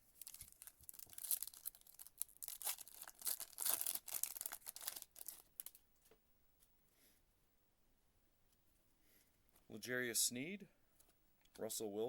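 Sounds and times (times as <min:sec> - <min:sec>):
foil wrapper tearing and crinkling: 0:00.1 - 0:05.8.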